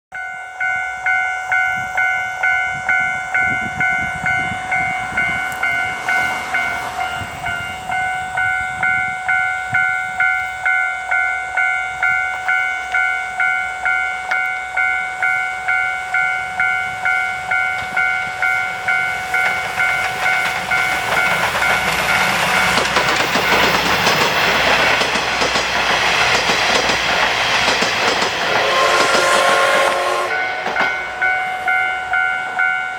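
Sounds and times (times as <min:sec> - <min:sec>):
steam train rumble: 0:00.4 - 0:32.9
train wheel clatter: 0:17.1 - 0:32.7.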